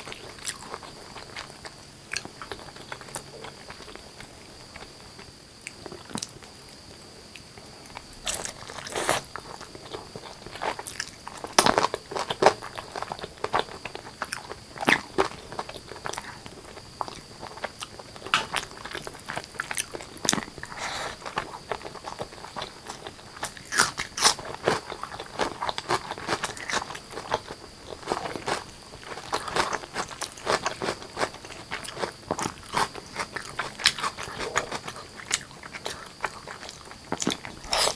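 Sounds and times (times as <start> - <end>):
person chewing food: 7.9 - 37.9.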